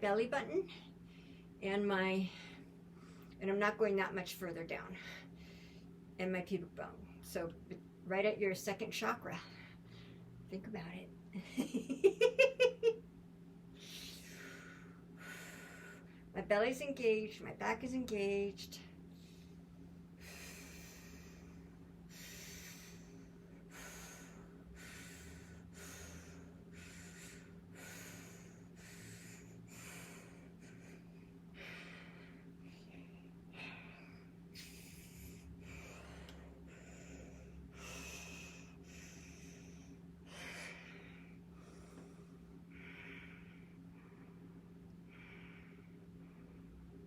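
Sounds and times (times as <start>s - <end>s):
steady low hum: 0.0s - 47.0s
woman breathing hard: 13.8s - 16.3s, 19.2s - 46.8s.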